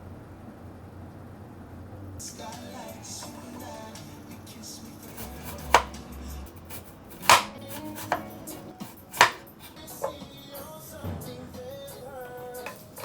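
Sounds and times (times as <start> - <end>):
knife chopping on cutting board: 5.1 - 10.3, 12.6 - 13.0.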